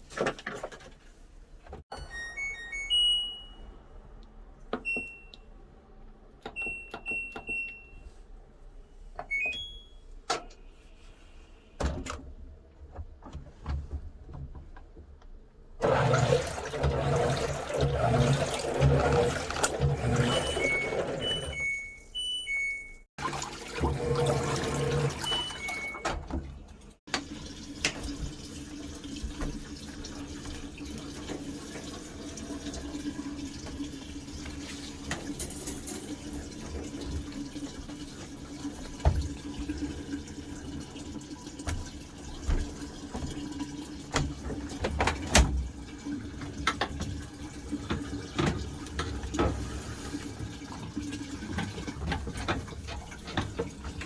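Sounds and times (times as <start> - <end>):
washing machine hum: 0.0 - 54.0
water sloshing in washing machine: 15.8 - 22.6, 23.2 - 54.0.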